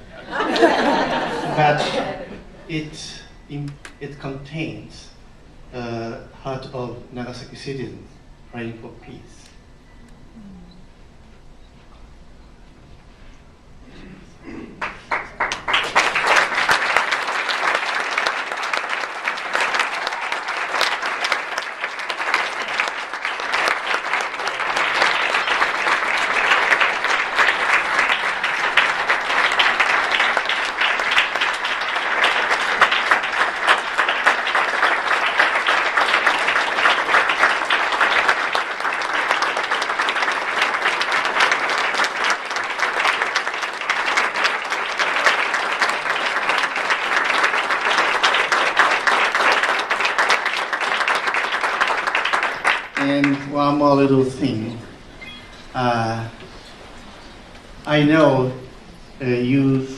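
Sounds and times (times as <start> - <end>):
audience applauding: 0.0 - 2.9, 14.8 - 54.8.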